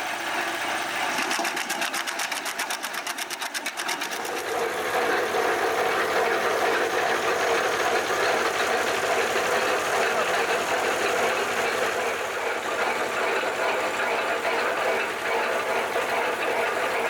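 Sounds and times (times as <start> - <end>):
wood chipper running: 0.0 - 17.0.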